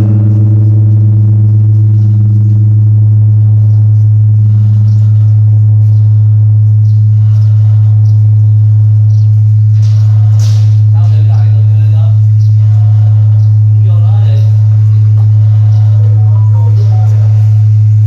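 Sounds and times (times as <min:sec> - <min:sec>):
large bronze bell ringing: 0:00.0 - 0:02.7.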